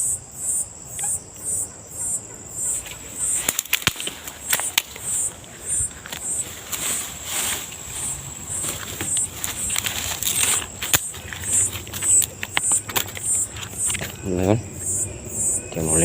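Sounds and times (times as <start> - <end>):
sharp knocks and clicks: 8.9 - 14.2.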